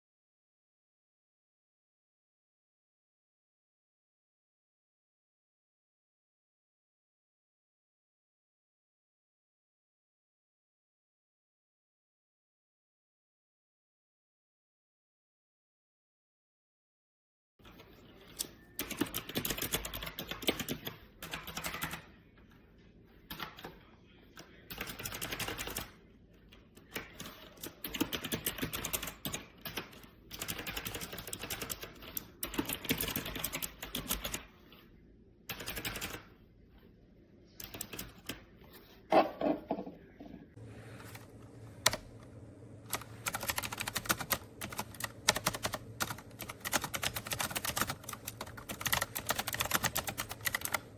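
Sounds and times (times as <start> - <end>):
mechanical keyboard typing: 18.4 - 22.1, 24.7 - 25.9, 26.9 - 34.4, 35.5 - 36.3, 37.6 - 38.4, 41.8 - 42.2, 42.9 - 50.9.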